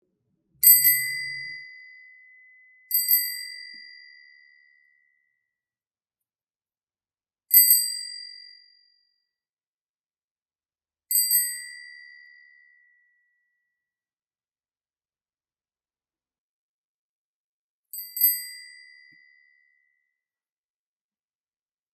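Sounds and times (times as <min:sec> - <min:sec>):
bicycle bell ringing: 0:00.6 - 0:01.7.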